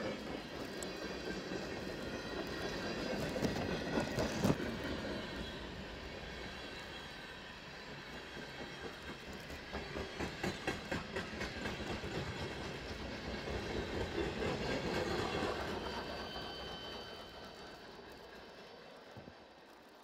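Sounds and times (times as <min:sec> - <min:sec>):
freight train rumbling past: 0:00.0 - 0:20.0
steel wheels clacking on rail joints: 0:07.9 - 0:19.4.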